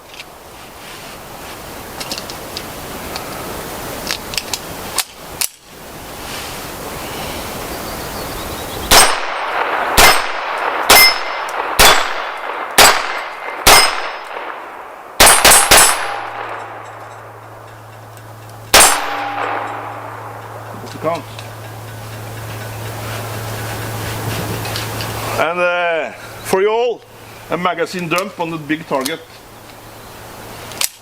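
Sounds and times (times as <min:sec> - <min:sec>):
pistol shots: 0:08.9 - 0:17.4, 0:18.7 - 0:20.7.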